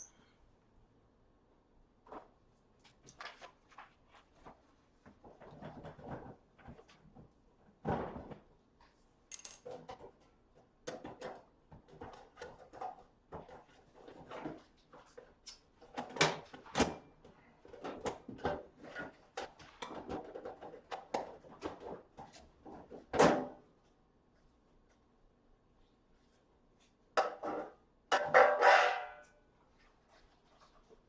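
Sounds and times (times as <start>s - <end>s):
objects knocking and rattling: 5.0s - 8.5s, 9.3s - 23.6s.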